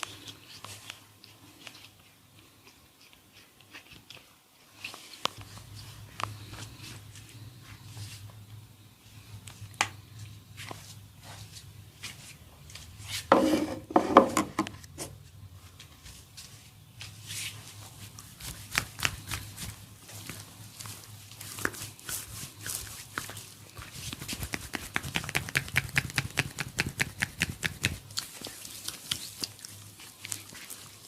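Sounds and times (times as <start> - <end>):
hands rubbing oiled head: 17.2 - 29.5.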